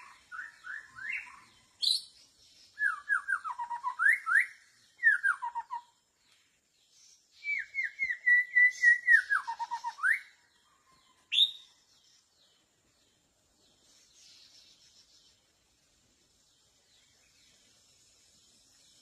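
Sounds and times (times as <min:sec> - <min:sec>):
bird singing whistled phrases: 0:00.0 - 0:02.1, 0:02.7 - 0:06.0, 0:07.3 - 0:10.4, 0:11.3 - 0:11.7.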